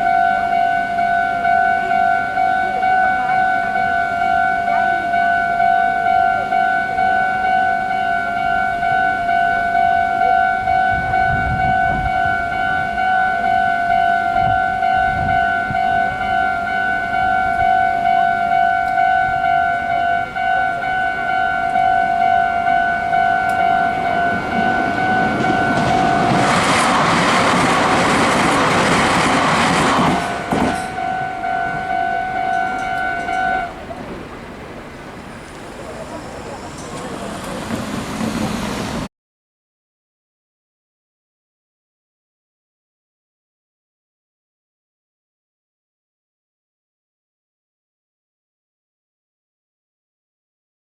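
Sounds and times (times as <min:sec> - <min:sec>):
level crossing warning bell: 0:00.0 - 0:39.1
train wheels on rails: 0:00.0 - 0:39.1.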